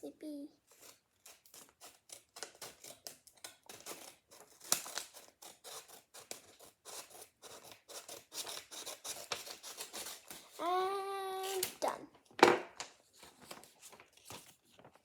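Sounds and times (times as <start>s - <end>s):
scissors snipping plastic bag: 1.4s - 5.3s, 11.3s - 11.9s.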